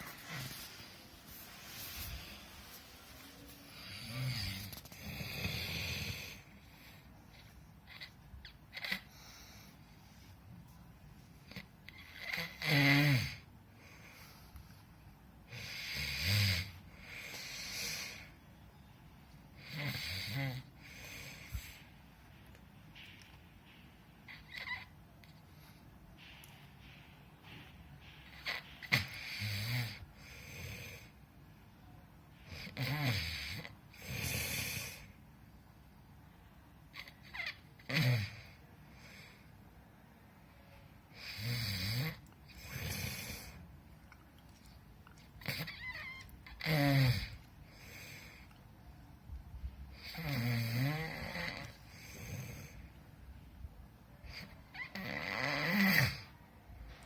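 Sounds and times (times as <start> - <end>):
person snoring: 3.7 - 6.5, 50.0 - 52.8, 54.4 - 56.3.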